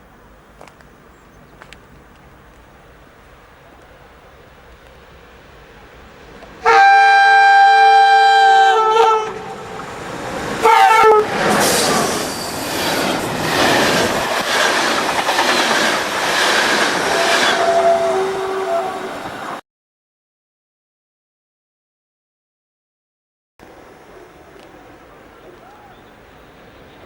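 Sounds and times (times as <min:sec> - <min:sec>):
train passing rush and rattle: 0:00.0 - 0:19.6
train horn blasts: 0:06.6 - 0:09.8, 0:10.6 - 0:12.4, 0:16.9 - 0:19.6.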